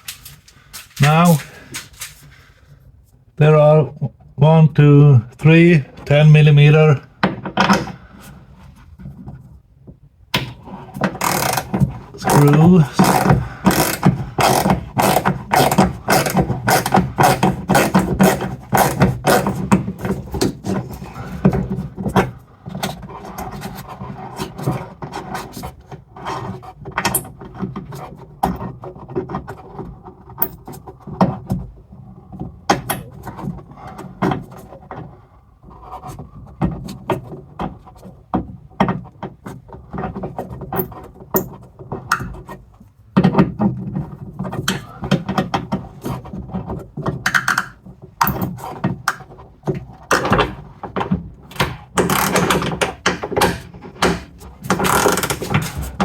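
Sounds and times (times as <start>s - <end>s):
handling noise: 0.0s - 2.5s.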